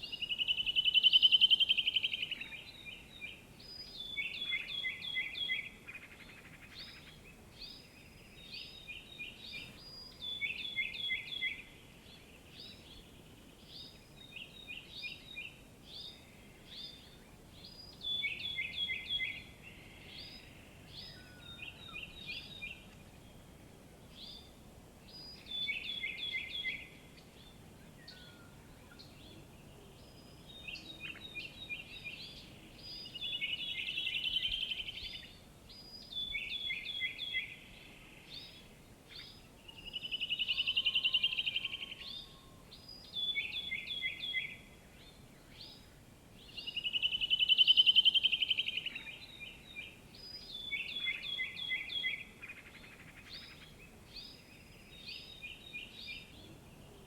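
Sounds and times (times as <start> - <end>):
birds chirping: 0.0 - 57.0
faint steady hiss: 0.0 - 57.0.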